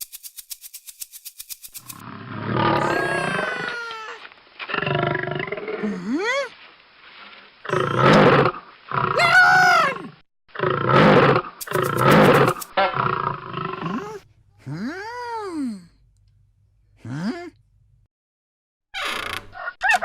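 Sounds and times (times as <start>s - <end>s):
lion roaring: 2.0s - 3.8s, 7.6s - 14.2s
person calling out: 5.8s - 6.6s, 9.2s - 10.2s, 13.8s - 16.0s, 17.0s - 17.6s.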